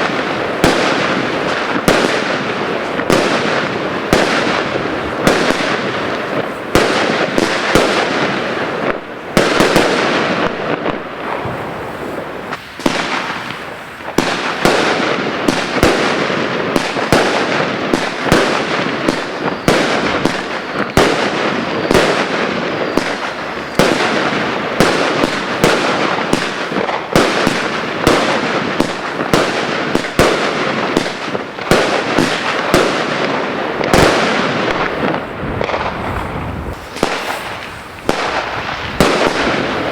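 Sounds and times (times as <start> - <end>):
fireworks bangs: 0.0 - 39.9
fireworks crackle: 0.0 - 39.9.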